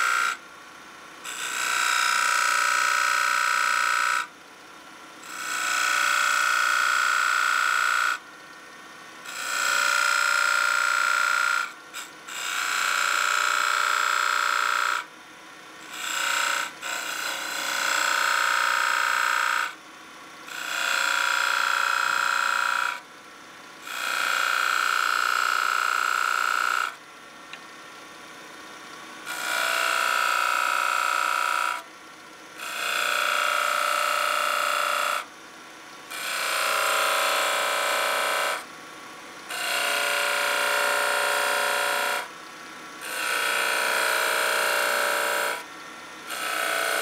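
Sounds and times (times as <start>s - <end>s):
lathe tool cutting wood: 9.3s - 11.7s, 15.9s - 19.7s, 20.5s - 23.0s, 23.9s - 26.9s, 29.3s - 31.8s, 32.6s - 35.2s, 36.1s - 38.6s, 39.5s - 42.3s, 43.0s - 45.6s, 46.3s - 47.0s
wood lathe running: 16.0s - 18.2s, 23.8s - 26.9s, 29.3s - 31.8s, 32.6s - 35.2s, 39.5s - 42.2s, 46.3s - 47.0s.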